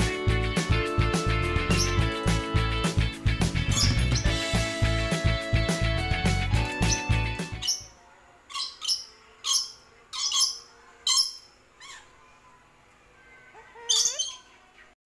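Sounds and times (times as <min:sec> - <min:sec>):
music: 0:00.0 - 0:08.0, 0:12.0 - 0:14.9
cockatoo calling: 0:08.5 - 0:12.3, 0:13.3 - 0:15.0.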